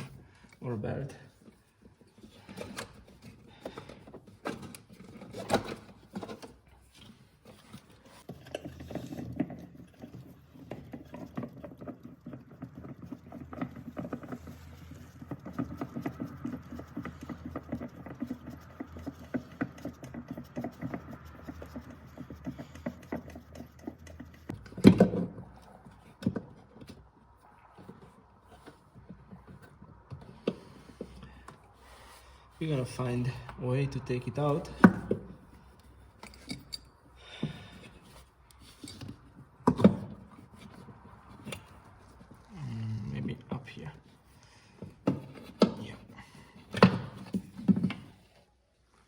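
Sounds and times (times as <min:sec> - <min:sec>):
rapid scraping and clicking: 0:00.0 - 0:36.9.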